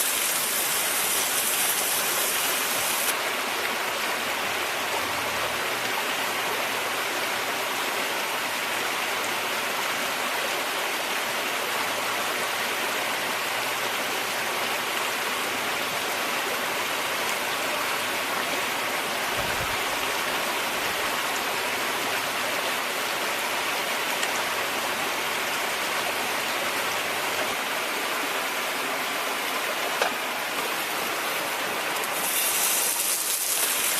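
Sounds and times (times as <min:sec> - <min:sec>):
pork sizzling in a pan: 0:00.0 - 0:03.1, 0:32.0 - 0:33.9.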